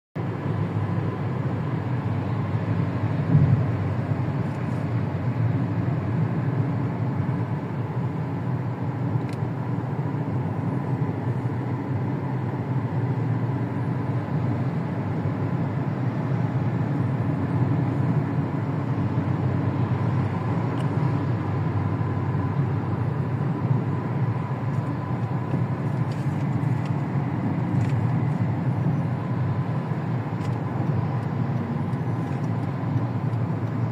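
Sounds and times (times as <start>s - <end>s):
brief thump: 3.3s - 3.6s.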